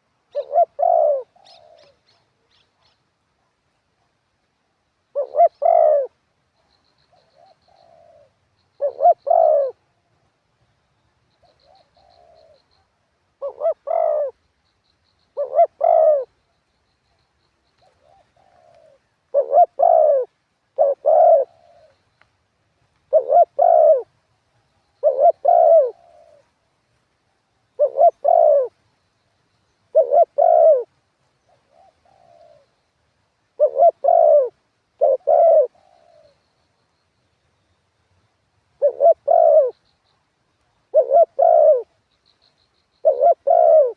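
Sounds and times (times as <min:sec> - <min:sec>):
dove cooing: 0:00.0 - 0:04.1, 0:05.1 - 0:06.2, 0:07.1 - 0:10.0, 0:11.4 - 0:12.8, 0:13.4 - 0:14.4, 0:15.4 - 0:16.4, 0:17.8 - 0:22.0, 0:23.1 - 0:24.2, 0:24.9 - 0:26.6, 0:27.7 - 0:28.8, 0:29.9 - 0:32.8, 0:33.6 - 0:36.6, 0:38.8 - 0:39.8, 0:40.8 - 0:42.0, 0:43.0 - 0:43.9
small birds chirping: 0:27.6 - 0:43.9.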